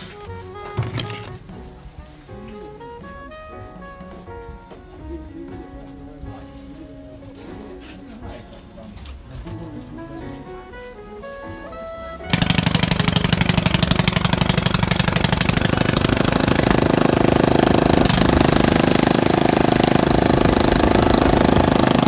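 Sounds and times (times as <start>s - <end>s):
generator engine running: 12.3s - 22.0s.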